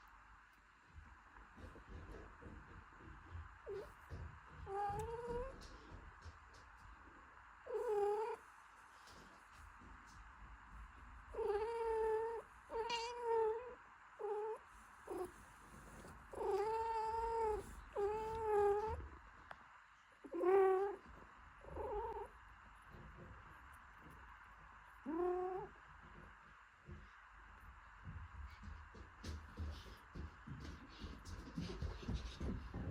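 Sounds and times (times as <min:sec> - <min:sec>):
cat meowing: 0:04.7 - 0:05.6, 0:11.4 - 0:15.3, 0:16.4 - 0:19.0, 0:21.7 - 0:22.3.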